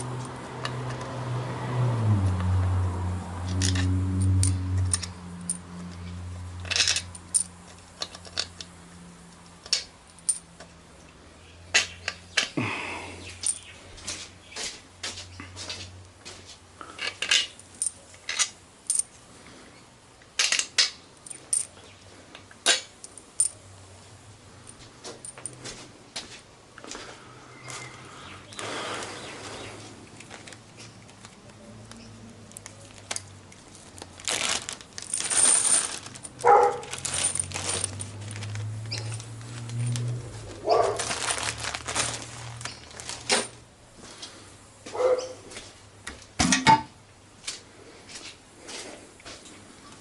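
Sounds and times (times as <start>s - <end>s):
metal tools clinking and clattering: 3.5s - 5.6s, 6.6s - 8.7s, 13.4s - 13.7s, 16.9s - 19.2s, 34.2s - 40.0s.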